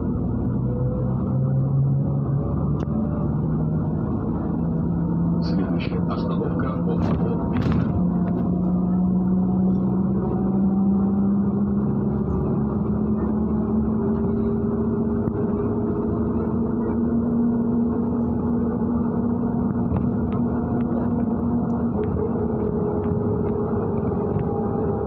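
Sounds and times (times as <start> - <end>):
bus engine hum: 0.0 - 25.0
road noise: 0.0 - 25.0.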